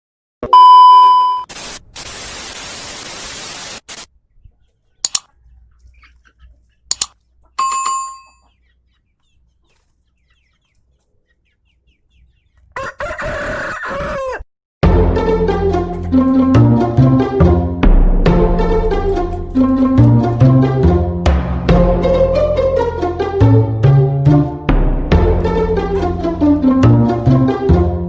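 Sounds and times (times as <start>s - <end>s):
hiss: 1.5s - 4.1s
sharp clicks: 5.0s - 5.3s, 6.9s - 7.2s
rooster crowing: 12.7s - 14.5s.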